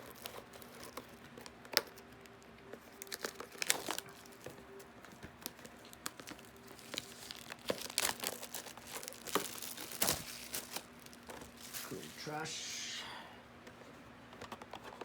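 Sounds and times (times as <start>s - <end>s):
plastic packaging crinkling: 0.0s - 12.2s.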